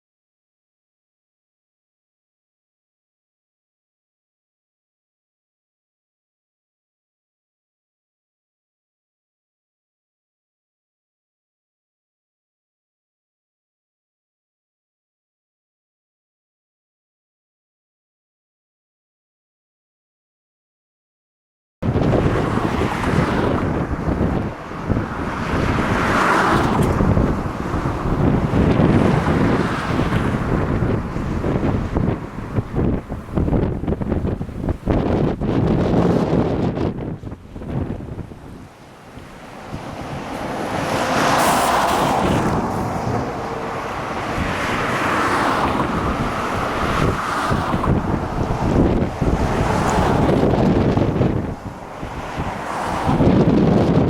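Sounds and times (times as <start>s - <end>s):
gusty wind buffeting microphone: 21.8s - 54.0s
choppy lake water: 21.9s - 54.0s.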